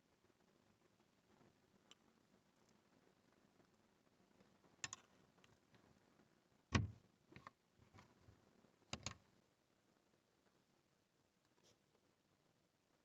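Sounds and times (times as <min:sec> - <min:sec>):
plastic clicks: 0:08.9 - 0:09.2.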